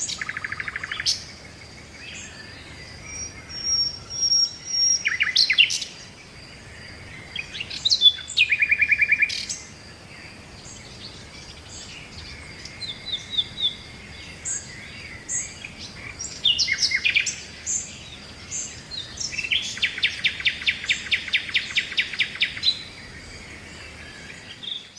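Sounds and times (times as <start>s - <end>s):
bird trill: 0.0s - 1.3s, 10.7s - 22.9s
birds singing and chirping: 0.0s - 24.9s
faint insect drone: 0.0s - 24.9s.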